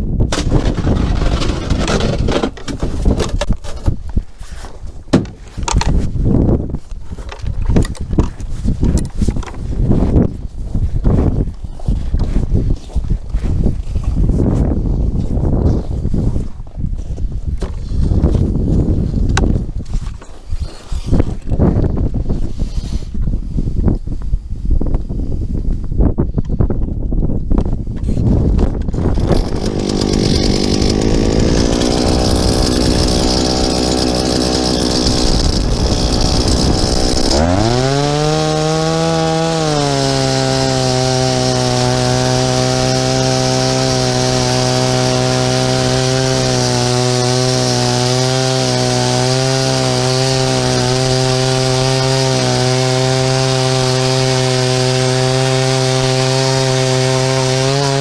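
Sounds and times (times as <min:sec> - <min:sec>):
ice auger engine revving: 0:00.6 - 0:02.5, 0:28.8 - 0:58.0.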